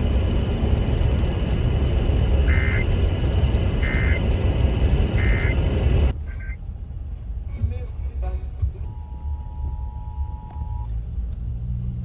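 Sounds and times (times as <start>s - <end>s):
buzzy two-tone digital bursts: 2.5s - 2.9s, 5.2s - 5.6s.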